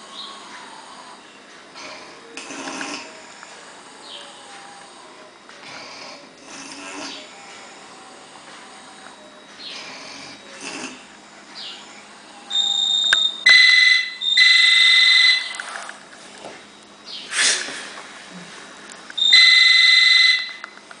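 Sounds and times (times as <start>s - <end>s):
person snoring: 4.8s - 9.0s
high whistle: 12.5s - 15.5s
short noisy breath: 17.3s - 18.0s.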